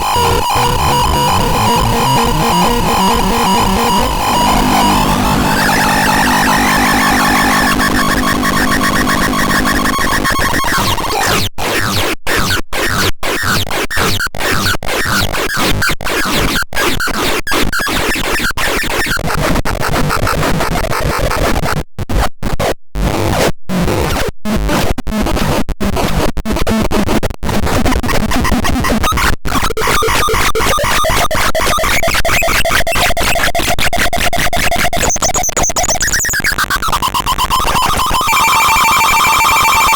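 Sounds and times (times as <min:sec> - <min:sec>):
steady synthesizer tones: 0:00.0 - 0:11.3, 0:29.7 - 0:39.9
harsh glitchy synthesizer noise: 0:00.0 - 0:12.0, 0:28.0 - 0:39.9.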